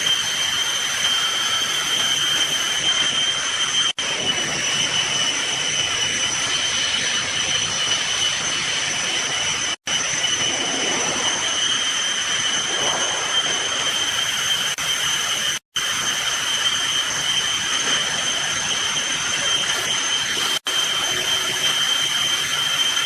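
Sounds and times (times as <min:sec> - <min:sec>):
high whine: 0:00.0 - 0:23.0
washing machine hissing rush: 0:09.8 - 0:23.0.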